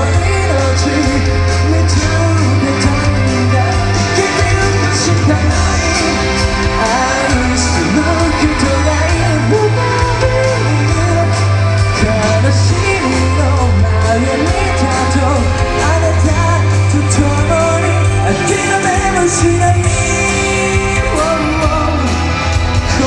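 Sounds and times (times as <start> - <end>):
bass line: 0.0 - 23.0
person singing: 0.0 - 23.0.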